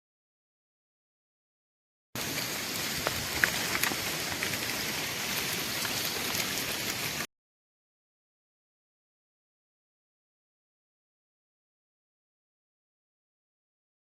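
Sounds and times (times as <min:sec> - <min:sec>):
rain falling: 0:02.2 - 0:07.3.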